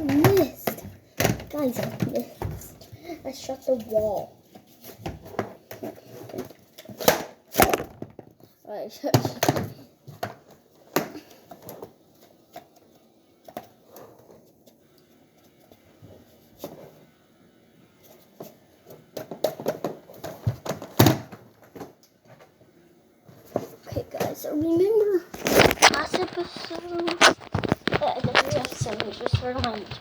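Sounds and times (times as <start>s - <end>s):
thumps: 7.5s - 8.5s, 24.2s - 30.0s.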